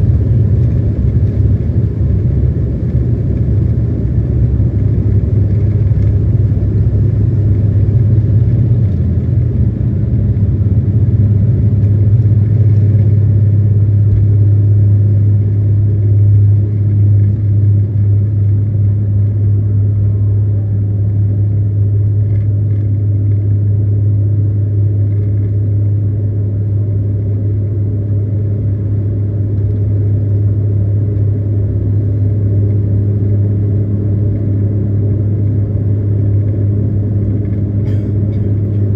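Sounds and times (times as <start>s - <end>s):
airliner engines droning: 0.0s - 38.9s.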